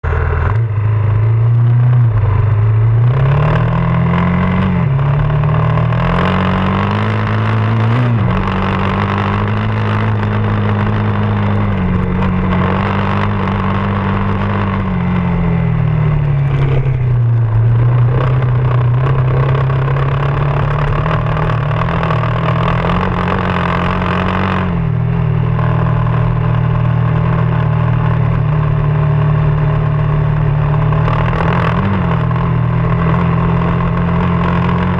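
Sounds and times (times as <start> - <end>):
motorcycle engine revving: 0.0 - 34.9
steady rushing noise: 0.0 - 34.9.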